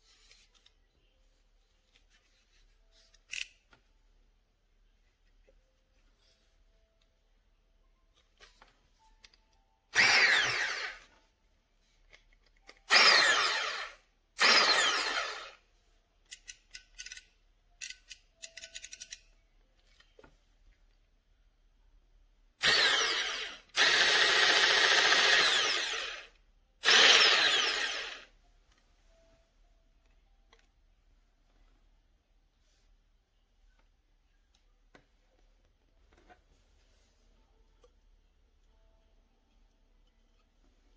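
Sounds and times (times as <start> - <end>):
hand blender motor whine: 10.0 - 11.0, 12.9 - 15.6, 22.6 - 28.3
small clicks: 16.3 - 20.1.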